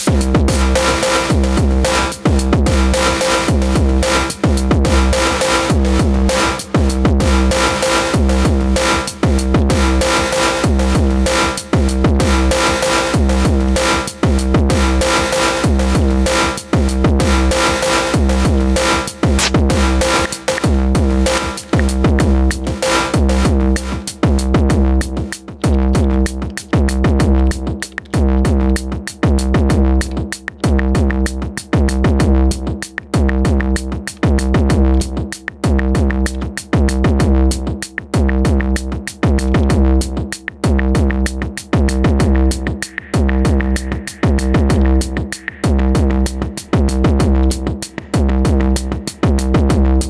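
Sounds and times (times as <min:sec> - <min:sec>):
heavy low bass: 0:00.0 - 0:28.8, 0:38.2 - 0:50.0
electronic drum loop: 0:00.0 - 0:50.0
fast ticking percussion: 0:00.0 - 0:50.0.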